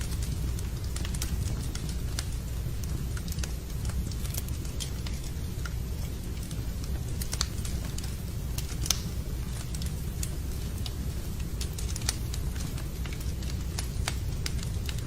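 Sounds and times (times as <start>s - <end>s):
steady low rumble: 0.0s - 15.0s
wood fire crackling and popping: 0.0s - 15.0s.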